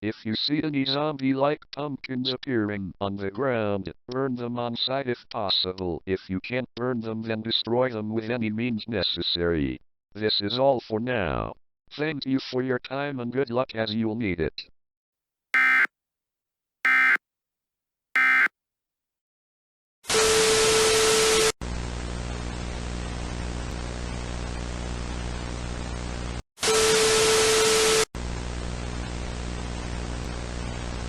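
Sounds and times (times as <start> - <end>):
buzzy electronic chirps: 15.6 - 15.9, 16.9 - 17.2, 18.2 - 18.5.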